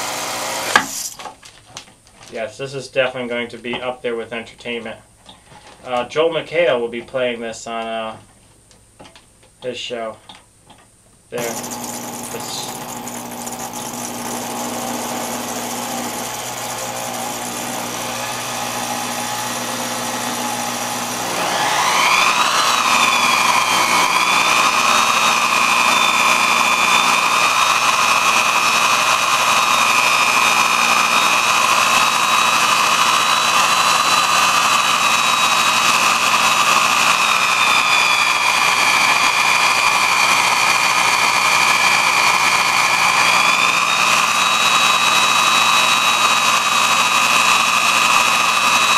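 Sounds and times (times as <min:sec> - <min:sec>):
electric motor whining: 0:00.0 - 0:01.1, 0:11.4 - 0:48.9.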